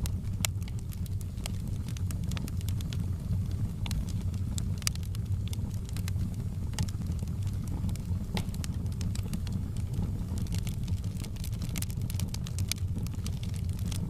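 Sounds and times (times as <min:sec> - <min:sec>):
campfire crackling and popping: 0:00.0 - 0:14.0.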